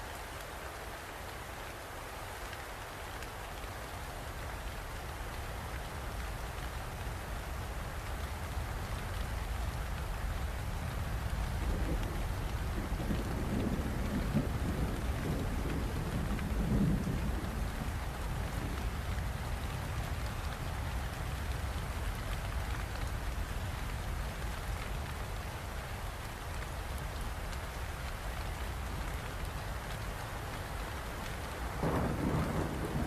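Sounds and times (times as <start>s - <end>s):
steady rain falling: 0.0s - 33.0s
low rumble of thunder: 10.5s - 22.2s, 31.2s - 33.0s.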